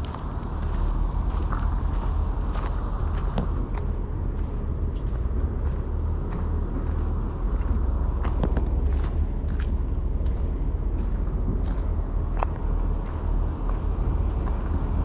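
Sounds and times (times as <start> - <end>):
diesel engine droning: 0.0 - 15.0.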